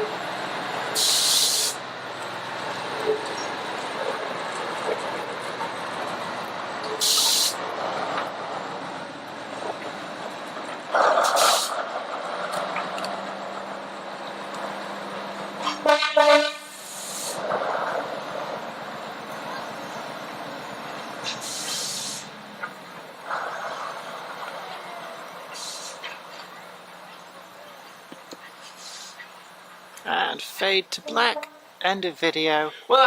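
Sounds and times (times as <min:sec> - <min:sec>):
short sharp hisses: 0:01.0 - 0:01.8, 0:07.0 - 0:07.6, 0:11.2 - 0:11.8, 0:16.6 - 0:17.4, 0:21.2 - 0:22.3, 0:25.5 - 0:26.1, 0:28.6 - 0:29.3
train whistle: 0:15.6 - 0:16.8.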